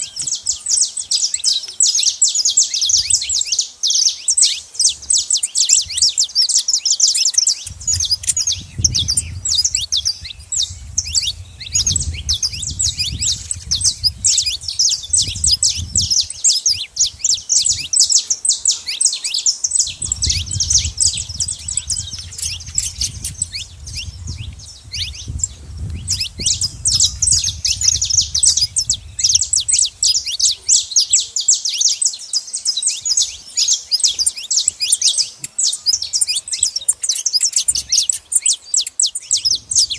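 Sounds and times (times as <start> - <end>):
finches chirping: 0.0 - 39.9.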